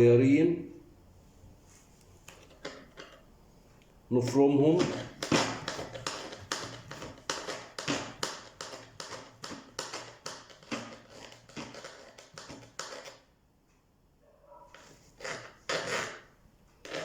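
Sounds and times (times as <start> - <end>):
knife chopping on cutting board: 4.6 - 13.2.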